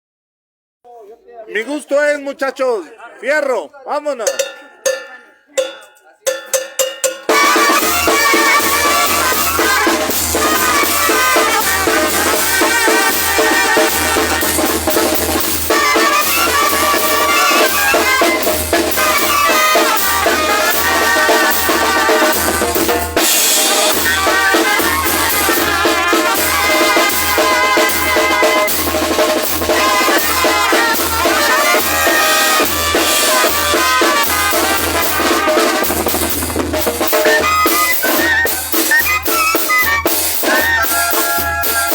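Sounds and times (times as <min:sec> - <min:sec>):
bass drum beat: 0:04.2 - 0:41.9
snare and cymbal: 0:04.3 - 0:41.9
brass band melody: 0:06.5 - 0:41.9.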